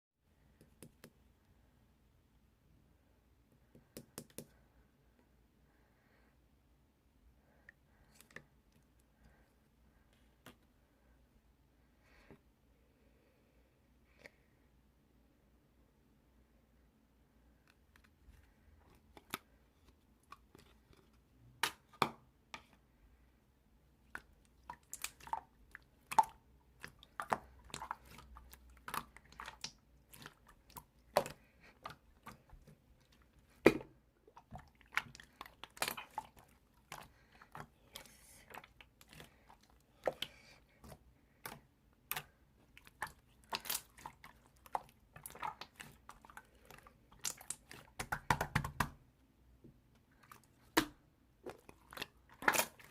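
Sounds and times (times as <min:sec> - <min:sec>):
slime squishing and popping: 0:33.5 - 0:37.7, 0:38.5 - 0:49.0, 0:50.6 - 0:52.9.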